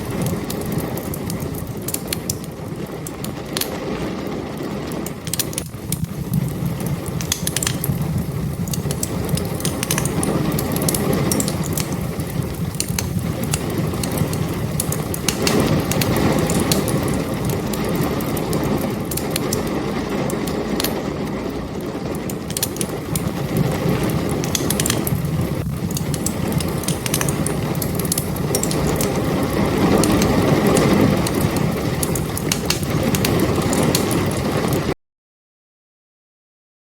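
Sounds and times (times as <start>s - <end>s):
sharp pops and snaps: 0.0s - 3.9s, 4.9s - 21.1s, 22.2s - 34.8s
low rumble of burning: 0.0s - 34.9s
wood fire crackling: 0.0s - 35.0s.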